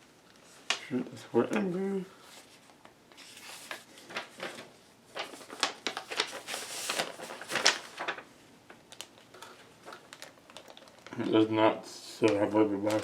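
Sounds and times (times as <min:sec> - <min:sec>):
rustling: 0:01.6 - 0:11.4.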